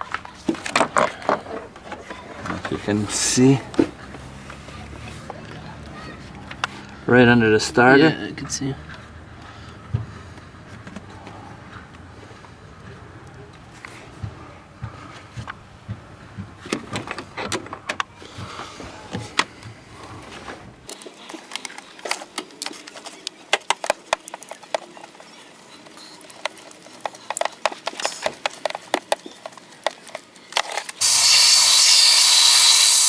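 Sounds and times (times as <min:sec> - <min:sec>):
loud steady hiss: 0:31.0 - 0:33.0.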